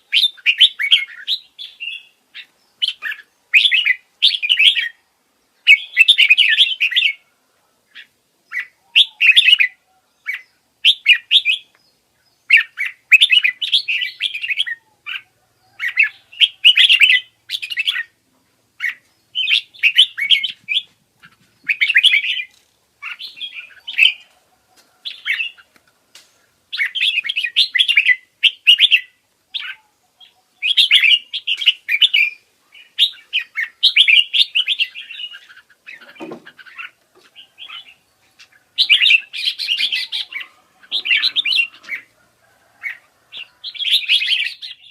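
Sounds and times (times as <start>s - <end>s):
parrotlets chirping: 12.4s - 18.2s, 18.8s - 25.7s, 26.4s - 44.9s.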